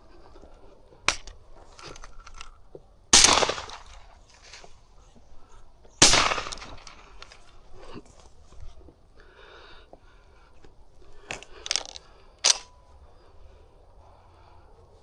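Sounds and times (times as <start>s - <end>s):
shotgun blasts with echo: 3.1s - 4.1s, 6.0s - 7.1s
sharp crack: 3.1s - 4.7s, 6.0s - 7.6s.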